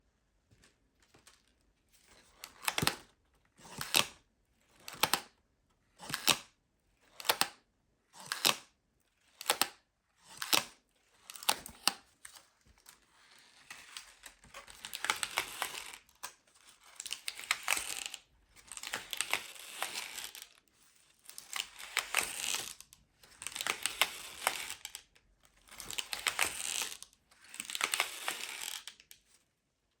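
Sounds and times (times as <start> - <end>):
paper pop-ups crinkling and rustling: 11.3 - 29.4.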